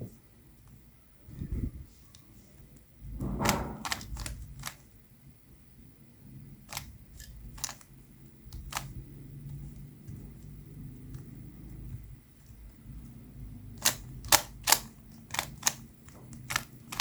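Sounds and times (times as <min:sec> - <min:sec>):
faint low hum: 0:00.0 - 0:17.0
puzzle cube twisting clicks: 0:03.8 - 0:04.8, 0:06.7 - 0:07.9, 0:08.5 - 0:09.1, 0:13.8 - 0:17.0.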